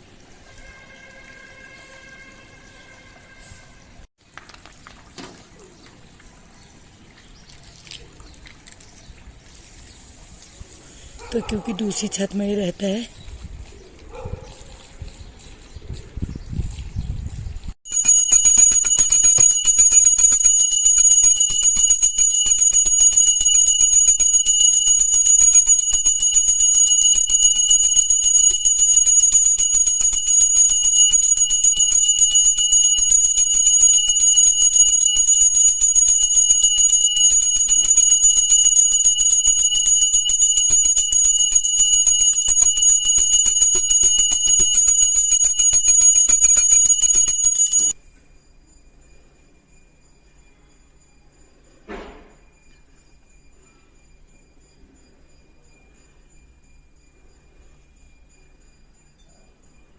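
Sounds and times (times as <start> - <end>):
brass hand bell ringing rapidly: 17.9 - 48.0.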